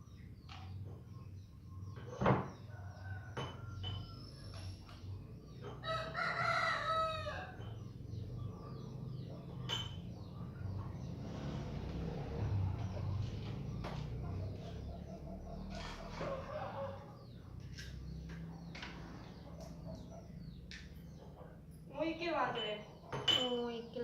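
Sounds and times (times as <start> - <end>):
small birds chirping: 0.0 - 24.0
rooster crowing: 5.8 - 7.7, 15.8 - 17.2.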